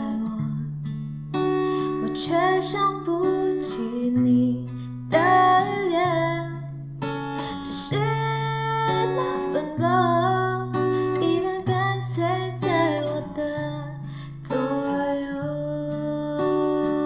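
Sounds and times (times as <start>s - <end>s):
strummed acoustic guitar: 0.0s - 17.0s
person singing: 7.7s - 17.0s.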